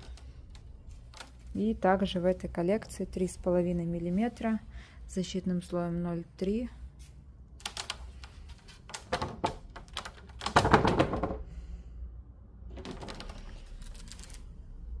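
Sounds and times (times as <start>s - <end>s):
vinyl flooring samples clicking: 0.0s - 1.8s, 7.5s - 11.4s, 12.7s - 14.4s.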